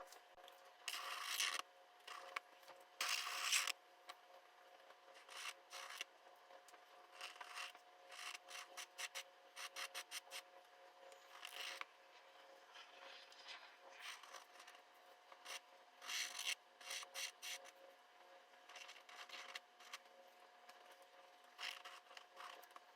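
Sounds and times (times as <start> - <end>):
faint steady hum: 0.0 - 22.9
pen scratching on paper: 7.1 - 10.4, 15.4 - 17.7, 18.7 - 20.0.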